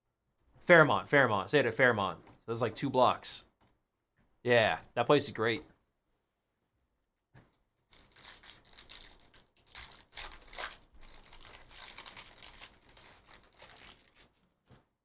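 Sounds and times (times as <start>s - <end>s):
card wrappers crinkling and tearing: 7.9s - 14.4s.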